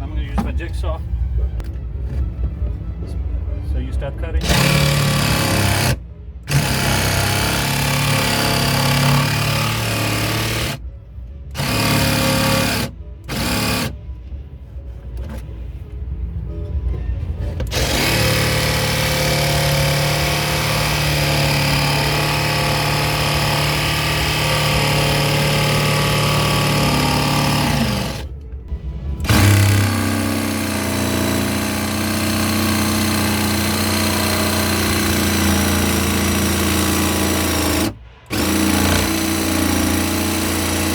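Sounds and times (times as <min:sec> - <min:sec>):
electric jigsaw motor buzzing: 0:04.4 - 0:10.8, 0:11.5 - 0:14.0, 0:17.7 - 0:28.3, 0:29.2 - 0:40.9.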